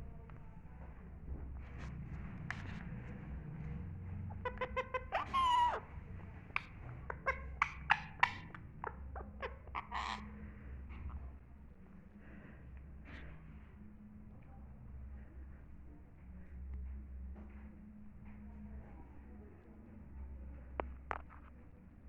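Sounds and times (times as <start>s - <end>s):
parrot calls and clicks: 4.3s - 10.3s.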